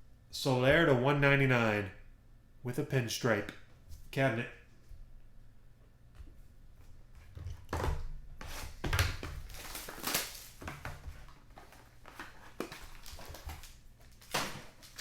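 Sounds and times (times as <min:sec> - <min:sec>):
packaging rustling and crinkling: 0:08.4 - 0:15.0.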